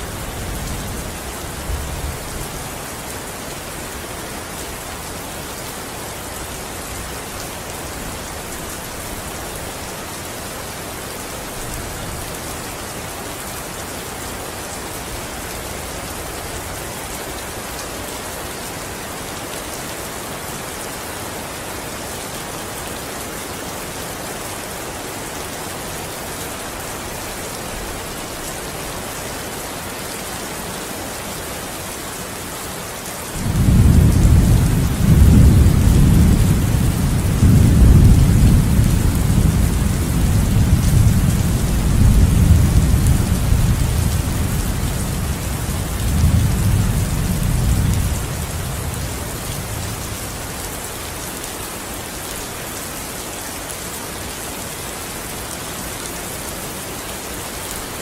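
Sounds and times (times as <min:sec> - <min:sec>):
steady rain: 0:00.0 - 0:58.0
thunder rumbling: 0:33.4 - 0:50.0.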